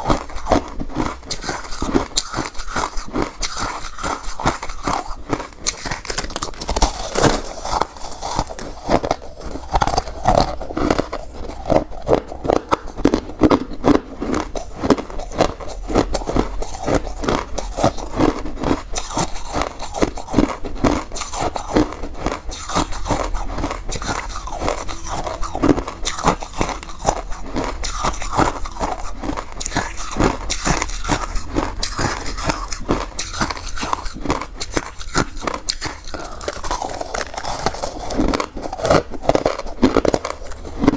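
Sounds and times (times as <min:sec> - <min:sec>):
crunchy ice being chewed: 0:00.0 - 0:40.9.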